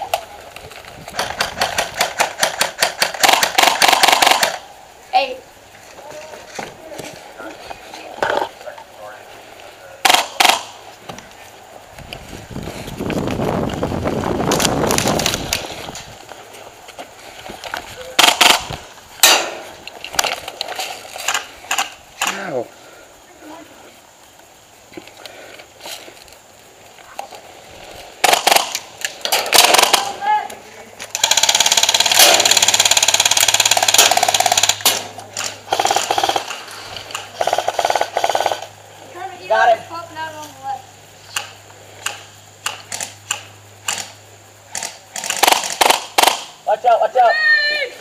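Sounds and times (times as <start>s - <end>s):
wind rumbling on microphone: 0.0s - 2.1s, 11.8s - 16.3s
airsoft gun firing full auto: 1.2s - 4.6s, 10.0s - 10.8s, 18.2s - 19.6s, 28.2s - 28.8s, 29.5s - 30.2s, 31.2s - 35.1s, 35.7s - 36.6s, 37.4s - 38.7s, 44.7s - 46.5s
sharp clicks: 41.3s - 46.5s.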